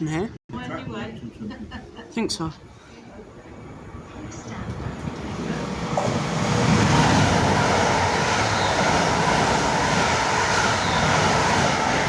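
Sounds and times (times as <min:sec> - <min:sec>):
electric train passing at speed: 0:03.1 - 0:12.0.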